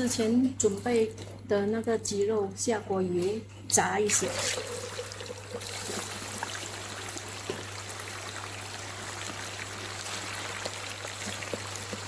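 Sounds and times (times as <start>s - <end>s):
chicken sizzling in hot oil: 4.4s - 12.0s.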